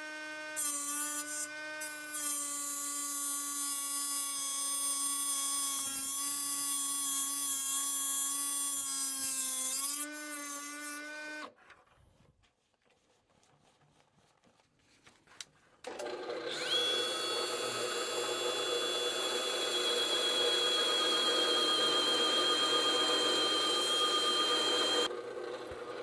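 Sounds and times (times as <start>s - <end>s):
electric grinder grinding steel: 15.9s - 26.0s.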